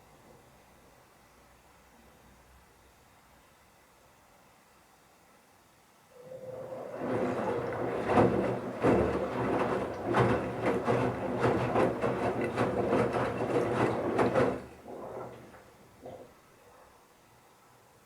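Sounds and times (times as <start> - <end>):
washing machine motor hum: 6.2 - 16.4
laundry thudding and sloshing: 6.4 - 16.3.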